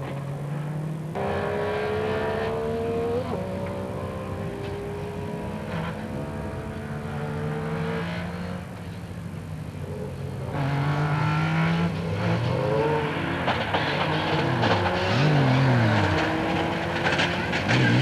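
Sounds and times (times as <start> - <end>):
rally car engine accelerating: 0.0 - 8.9, 9.9 - 18.0.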